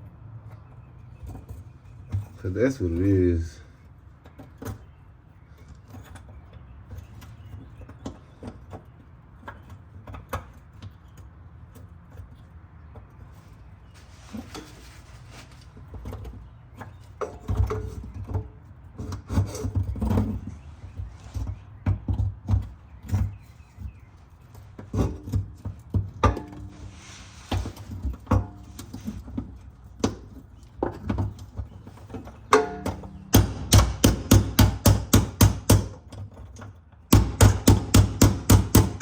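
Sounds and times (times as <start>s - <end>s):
tools knocking and scraping: 13.0s - 39.0s.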